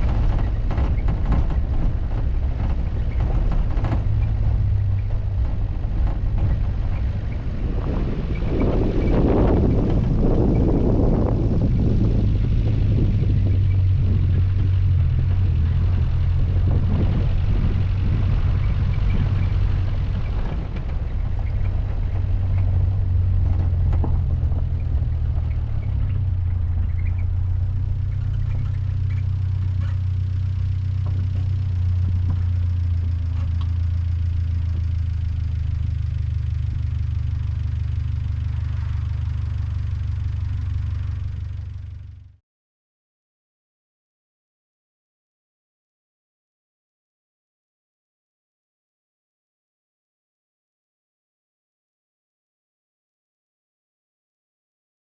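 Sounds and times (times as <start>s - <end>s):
car engine and road rumble: 0.0s - 42.4s.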